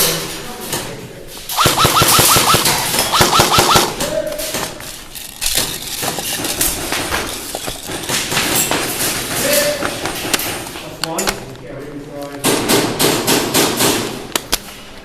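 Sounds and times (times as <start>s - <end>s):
airsoft gun firing bursts: 1.5s - 4.1s.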